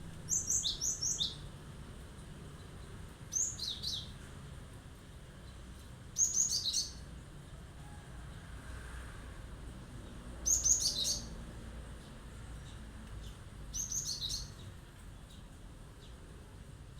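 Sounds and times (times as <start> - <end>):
bird singing high phrases: 0.1 - 1.5, 3.3 - 4.2, 6.2 - 7.0, 10.4 - 11.4, 13.7 - 14.7.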